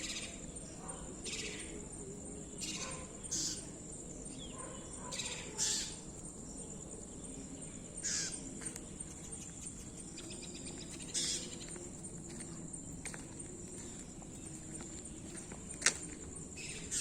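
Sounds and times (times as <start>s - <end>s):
bird harsh distress calls: 2.6s - 3.8s, 4.6s - 6.1s, 8.0s - 8.5s.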